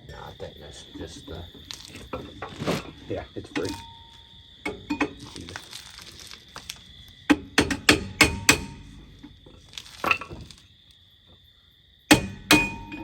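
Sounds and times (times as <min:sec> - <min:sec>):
metal knocking on metal: 0:03.5 - 0:05.5, 0:07.3 - 0:10.5, 0:12.1 - 0:13.0.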